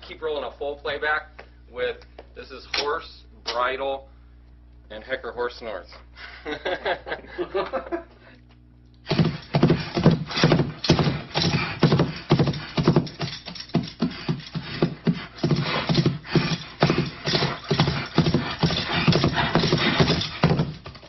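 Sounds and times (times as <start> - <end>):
horse hoofbeats clip-clop: 9.1 - 21.0
bridle jingle: 9.2 - 21.0.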